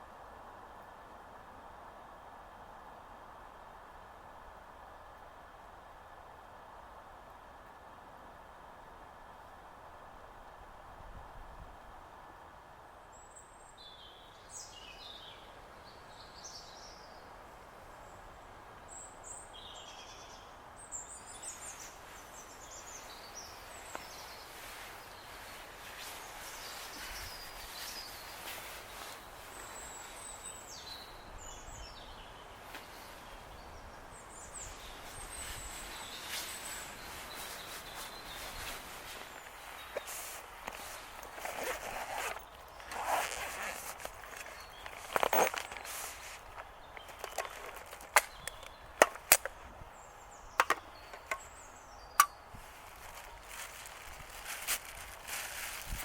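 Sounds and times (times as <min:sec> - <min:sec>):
low outdoor background: 0:00.0 - 0:56.0
small birds calling: 0:18.9 - 0:56.0.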